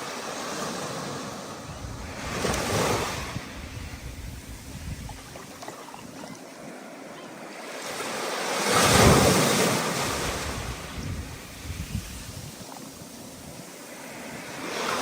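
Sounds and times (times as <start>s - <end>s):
wind rushing: 1.7s - 5.4s, 10.0s - 12.8s.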